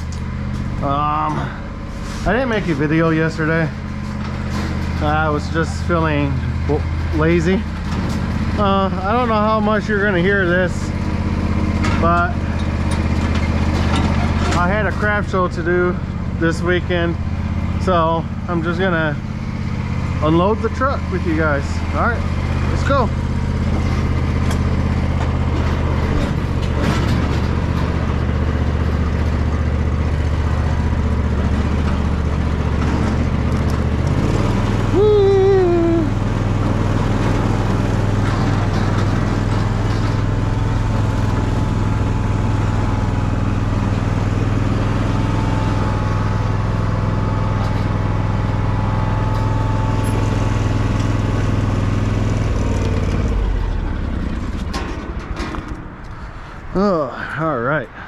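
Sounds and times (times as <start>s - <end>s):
engine humming: 0.0s - 58.0s.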